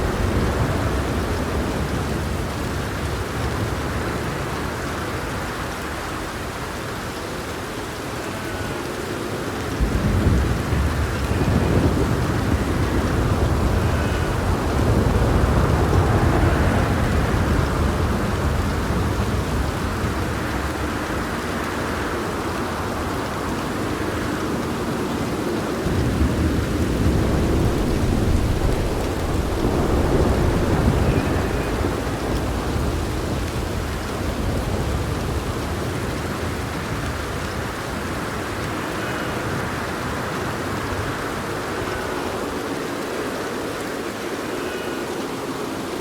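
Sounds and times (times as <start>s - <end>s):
heavy rain: 0.0s - 46.0s
rolling thunder: 9.8s - 21.0s, 25.8s - 41.2s.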